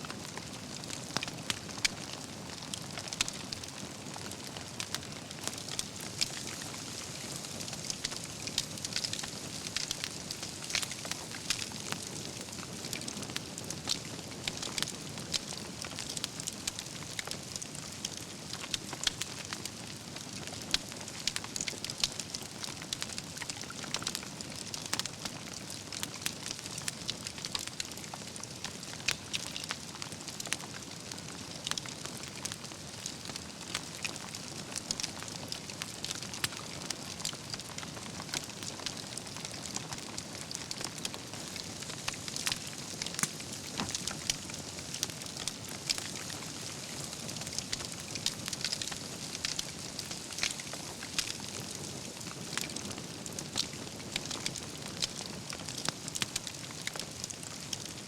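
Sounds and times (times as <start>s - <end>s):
logs crackling and popping: 0.1s - 58.0s
campfire flame rushing: 38.4s - 57.8s.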